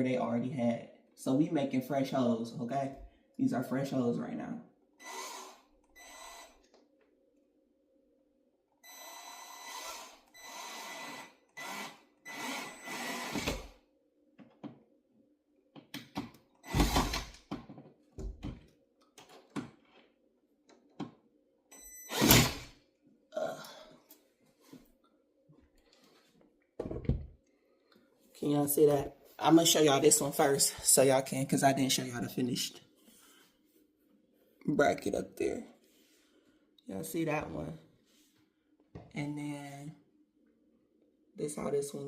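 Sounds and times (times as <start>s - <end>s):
cordless drill whining: 5.0s - 6.7s, 8.8s - 13.8s, 16.6s - 17.4s, 22.1s - 22.7s
knocks and clunks of handling tools: 14.4s - 14.8s, 15.7s - 20.0s, 26.8s - 27.4s.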